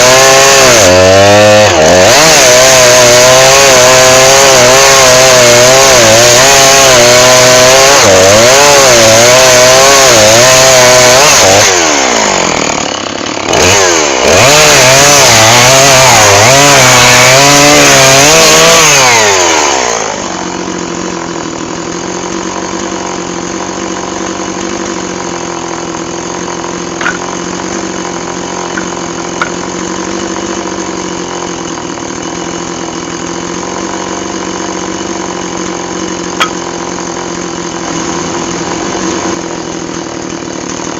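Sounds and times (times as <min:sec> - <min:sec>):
chainsaw running: 0:00.0 - 0:40.9.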